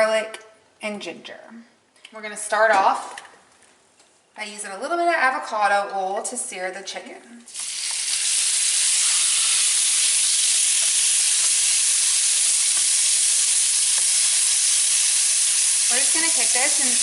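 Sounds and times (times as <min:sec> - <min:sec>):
chicken sizzling in a pan: 0:07.5 - 0:17.0.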